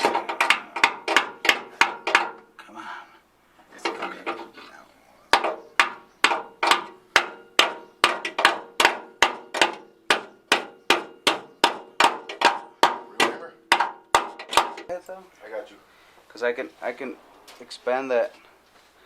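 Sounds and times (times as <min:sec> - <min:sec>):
hammer striking metal: 0:00.0 - 0:02.4, 0:05.3 - 0:14.9.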